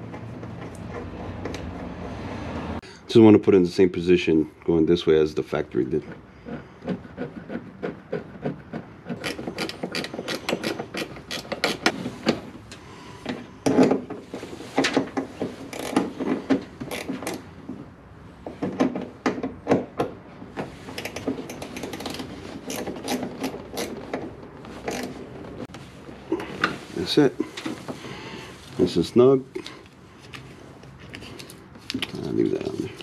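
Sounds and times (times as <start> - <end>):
ratchet wrench clicking: 9.2 - 11.8.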